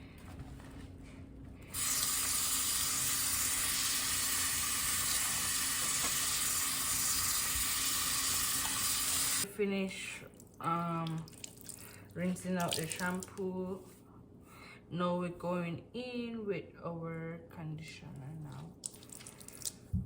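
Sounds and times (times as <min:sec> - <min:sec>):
tap water running into sink: 0:01.7 - 0:09.4.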